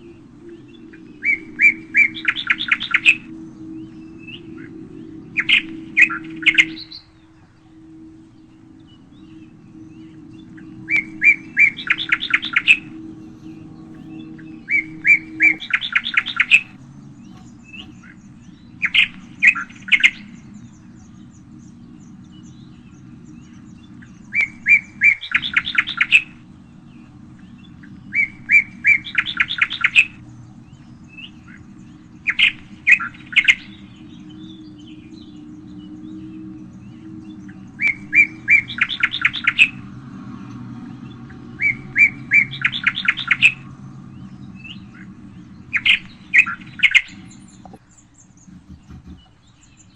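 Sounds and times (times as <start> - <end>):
low hum: 0.0 - 22.1, 42.3 - 49.9
songbird singing with trill: 0.0 - 39.8, 41.0 - 49.9.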